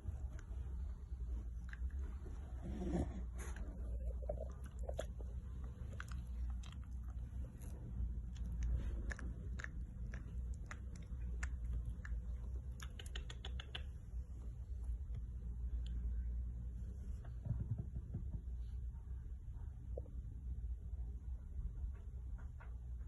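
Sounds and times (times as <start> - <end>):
steady low hum: 0.0 - 23.0
crunchy chewing: 3.4 - 13.9.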